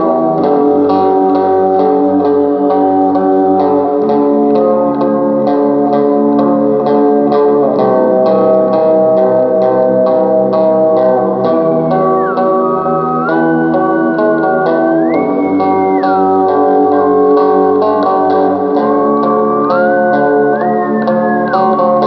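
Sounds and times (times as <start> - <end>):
guitar-led music with beat: 0.0 - 22.0.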